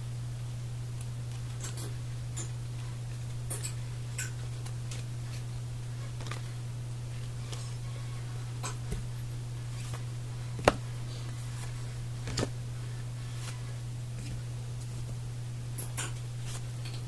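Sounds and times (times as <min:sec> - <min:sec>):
low electrical hum: 0:00.0 - 0:17.0
trading cards clicking and sliding: 0:01.3 - 0:15.2, 0:15.8 - 0:17.0.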